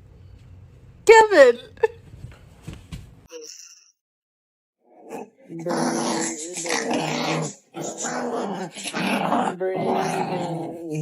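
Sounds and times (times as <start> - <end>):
dog growling moans: 4.8 - 11.0.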